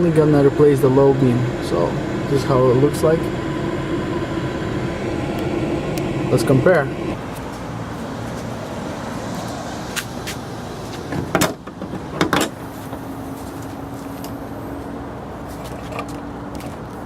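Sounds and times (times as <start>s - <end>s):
steady low tone: 0.0s - 9.9s
car engine humming: 0.0s - 17.0s.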